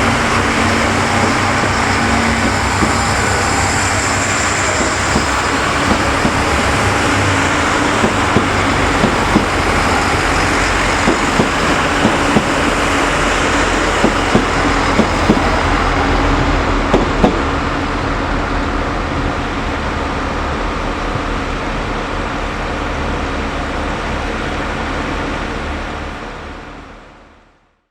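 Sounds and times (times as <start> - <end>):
wheels clicking over rail joints: 0.0 - 17.7
diesel train engine drone: 0.0 - 27.9.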